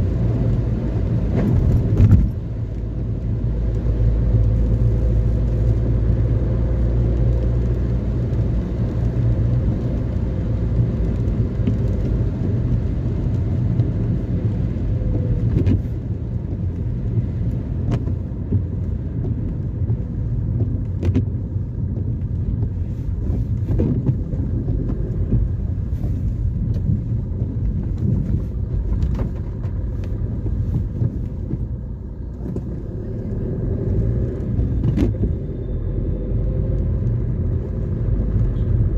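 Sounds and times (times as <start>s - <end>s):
car engine and tyre rumble: 0.0s - 38.9s.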